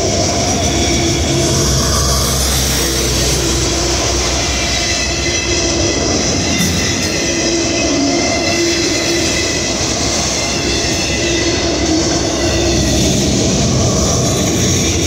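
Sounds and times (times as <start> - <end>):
freight train rumbling on track: 0.0 - 15.0.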